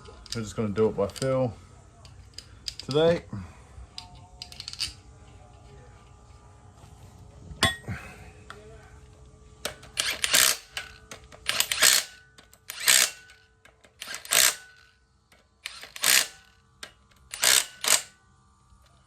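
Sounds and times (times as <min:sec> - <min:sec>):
ratchet wrench clicking: 0:09.6 - 0:18.2.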